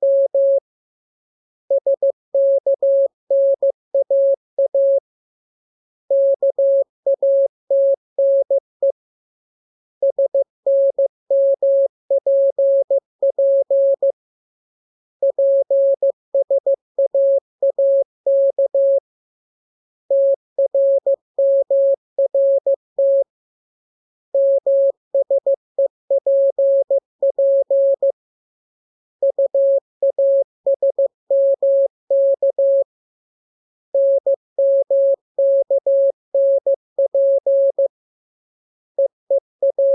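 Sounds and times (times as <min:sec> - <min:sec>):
morse code beeps: 0:34.0 - 0:37.9, 0:39.0 - 0:39.9.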